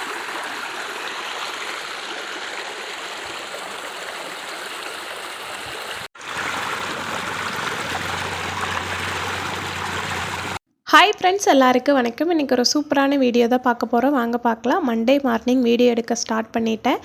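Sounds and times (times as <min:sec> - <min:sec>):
running water rushing: 0:00.0 - 0:10.6.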